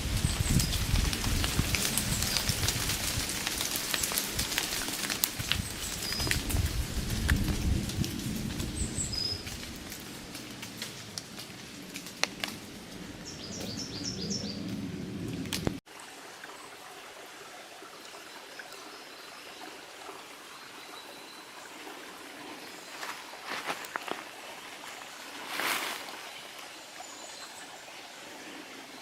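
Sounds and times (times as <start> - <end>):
leaves landing ticks: 0.0 - 13.8, 14.6 - 15.8, 22.9 - 26.7
stream rushing: 14.9 - 29.0.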